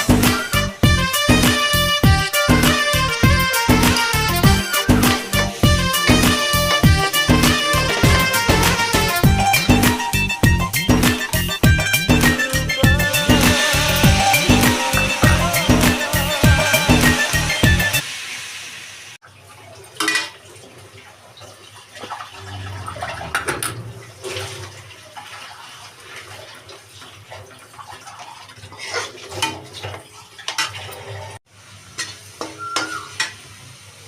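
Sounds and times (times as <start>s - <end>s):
background music: 0.0s - 18.0s
running water: 0.0s - 18.1s, 19.2s - 31.4s
utensils and pots clinking: 19.9s - 20.5s, 22.5s - 24.8s, 28.7s - 31.4s, 32.0s - 33.4s.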